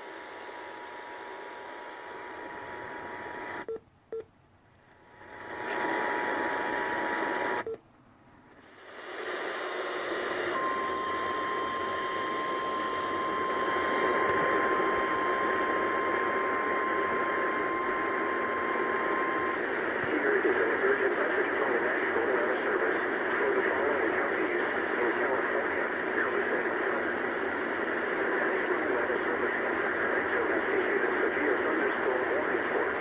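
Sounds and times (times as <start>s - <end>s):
radio static hiss: 0.0s - 3.7s, 5.0s - 7.7s, 8.5s - 33.0s.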